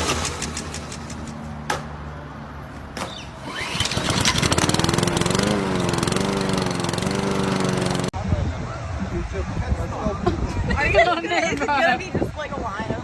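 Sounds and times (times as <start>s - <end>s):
small engine running: 3.4s - 8.1s.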